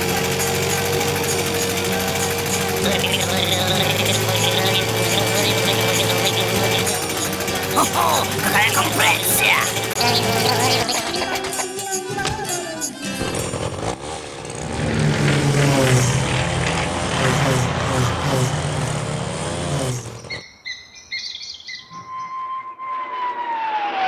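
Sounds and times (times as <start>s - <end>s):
high bird-like chirps: 20.2s - 22.8s
long falling whistle: 21.9s - 24.0s.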